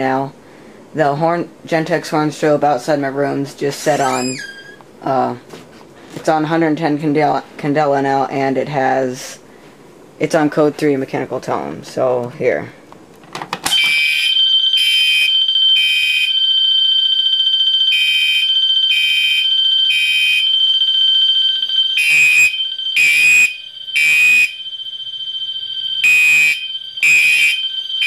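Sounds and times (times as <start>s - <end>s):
buzzy fire alarm horn blasts: 3.9s - 4.4s, 13.7s - 28.0s
electronic fire alarm bell tone: 13.7s - 28.0s.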